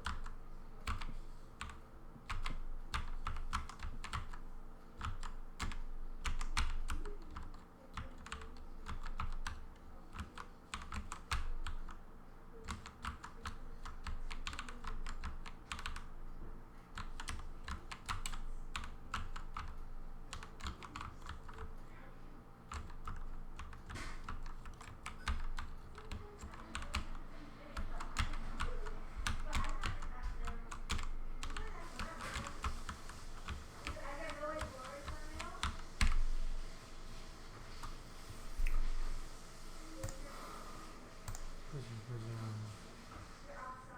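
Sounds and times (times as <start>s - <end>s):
mechanical keyboard keystrokes: 0.0s - 4.4s, 5.0s - 12.0s, 12.6s - 16.1s, 16.9s - 21.7s, 22.7s - 27.2s.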